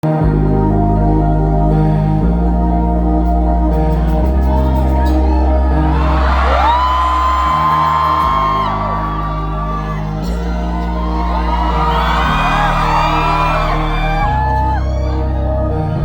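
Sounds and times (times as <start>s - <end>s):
live pop music: 0.0s - 16.0s
audience whooping and screaming: 4.5s - 15.8s
long high cry: 4.5s - 15.8s.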